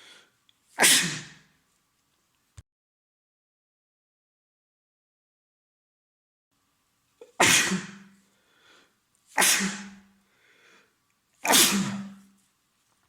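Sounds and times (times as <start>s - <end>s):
man sneezing: 0.8s - 1.5s, 7.2s - 8.2s, 9.3s - 10.1s, 11.4s - 12.3s
faint short breaths: 8.2s - 9.0s, 10.2s - 11.0s.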